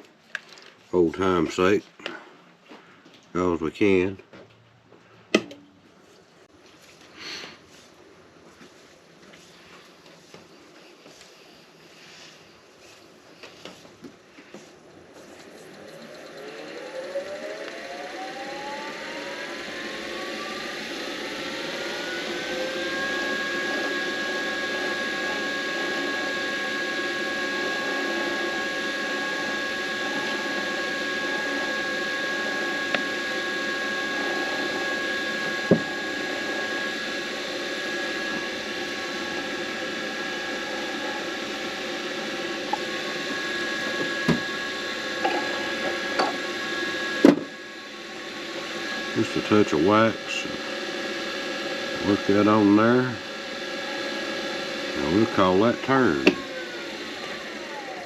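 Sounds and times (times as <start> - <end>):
wood lathe motor whine: 14.4 - 58.0.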